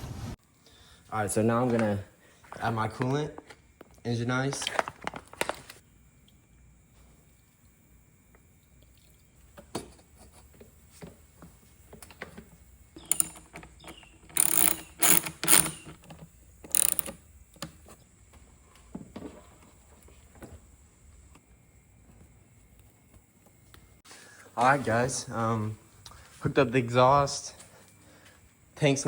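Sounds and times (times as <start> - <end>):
tools clicking and knocking: 11.9 - 17.8
rattling bursts: 13.0 - 16.0, 16.7 - 17.2.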